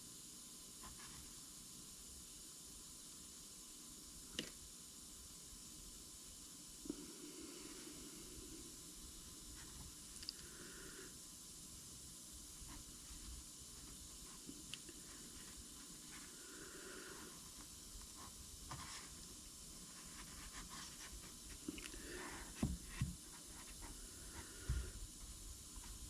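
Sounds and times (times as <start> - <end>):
soft hissing: 6.7 - 26.0.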